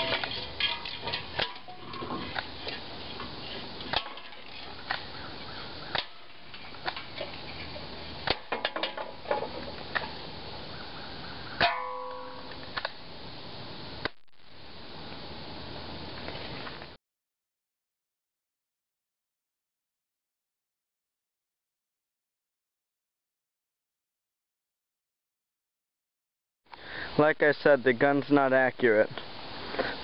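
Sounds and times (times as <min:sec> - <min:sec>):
sharp metallic hit: 0:11.6 - 0:12.6.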